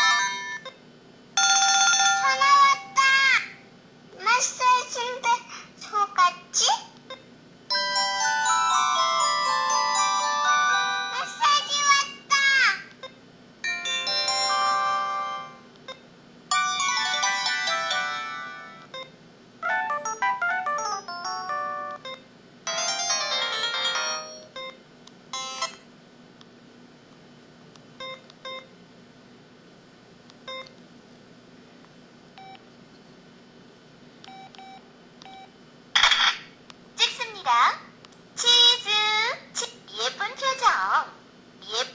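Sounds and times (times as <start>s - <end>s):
phone melodic alert tones: 0.0s - 0.7s, 7.7s - 11.5s, 13.7s - 15.6s, 19.6s - 24.7s.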